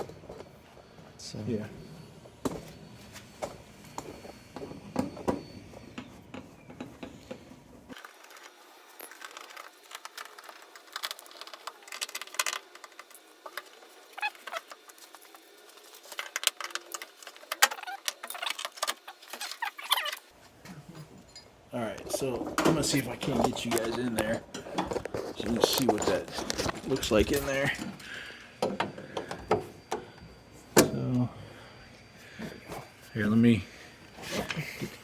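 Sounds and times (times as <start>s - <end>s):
hand tools and metal parts clinking: 3.1s - 30.3s.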